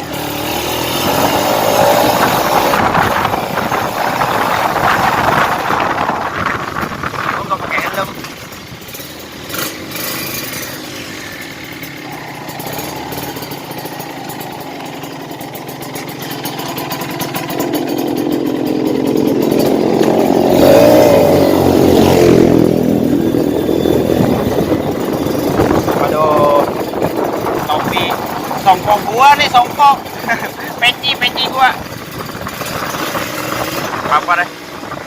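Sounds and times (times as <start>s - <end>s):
two-stroke motorcycle engine running: 0.0s - 35.0s
wind buffeting microphone: 0.8s - 9.0s, 17.4s - 35.0s.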